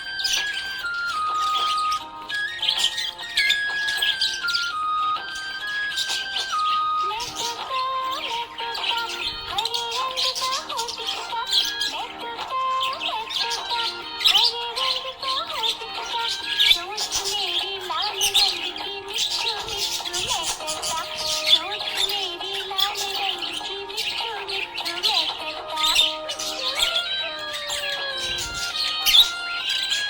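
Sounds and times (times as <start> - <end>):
background music: 0.0 - 30.0
budgerigar chirping: 0.0 - 30.0.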